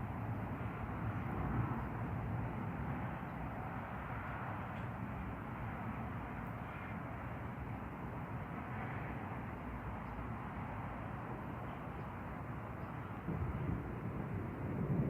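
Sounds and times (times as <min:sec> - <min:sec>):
rain falling steadily: 0:09.6 - 0:15.0
low thunder rumble: 0:12.5 - 0:15.0.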